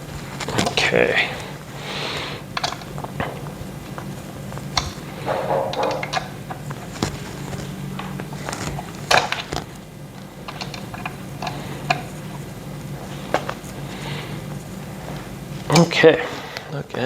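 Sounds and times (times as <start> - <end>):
steady low hum: 0.0 - 17.0
allen key and metal parts clicking: 4.8 - 6.7, 10.4 - 12.1.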